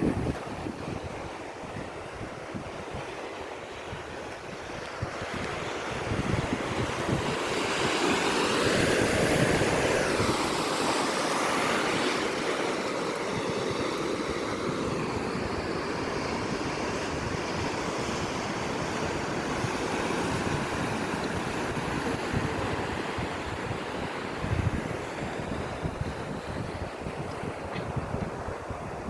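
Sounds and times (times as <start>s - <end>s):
ocean surf washing: 0.0s - 29.0s
wind buffeting microphone: 0.0s - 29.0s.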